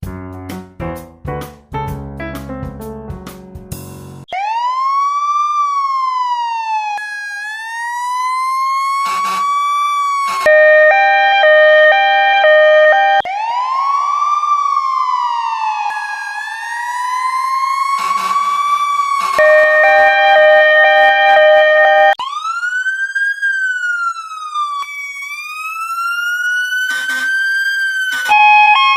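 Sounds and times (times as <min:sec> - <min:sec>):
siren wailing: 0:04.3 - 0:28.9
two-tone hi-lo siren: 0:04.3 - 0:28.9.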